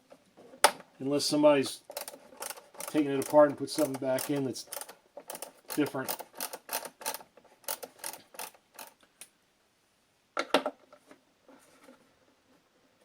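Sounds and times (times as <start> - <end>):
faint handling noise: 10.5 - 13.0.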